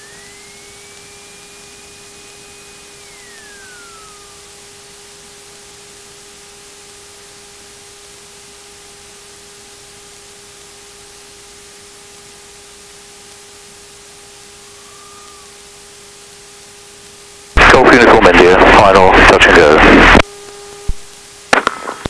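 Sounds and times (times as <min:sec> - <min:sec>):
faint short whistle-like glide: 0:00.0 - 0:04.5, 0:14.6 - 0:15.6
electronic hiss with low hum: 0:00.0 - 0:22.0.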